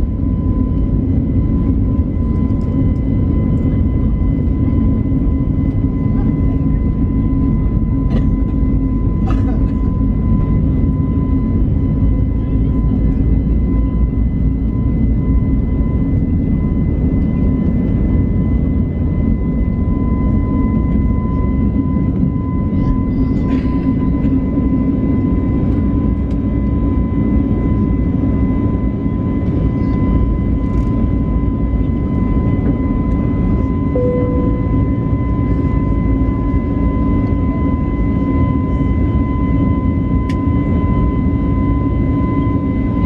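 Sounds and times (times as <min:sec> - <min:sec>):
jet engine cabin roar: 0:00.0 - 0:43.0
thin steady whine: 0:31.2 - 0:43.0.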